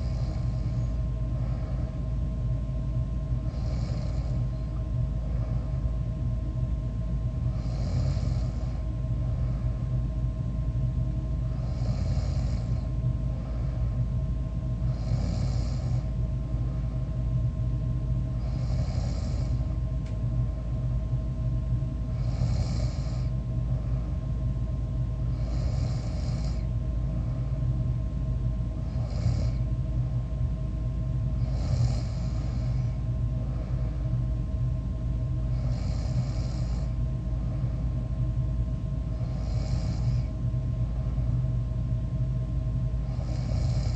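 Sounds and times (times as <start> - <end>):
person snoring: 0.0 - 1.9, 3.5 - 4.7, 7.5 - 8.8, 11.6 - 12.9, 14.8 - 16.1, 18.4 - 19.8, 22.1 - 23.3, 25.3 - 26.7, 28.9 - 29.6, 31.4 - 33.9, 35.5 - 37.0, 39.2 - 40.3, 43.0 - 43.9
steady low hum: 0.0 - 43.9.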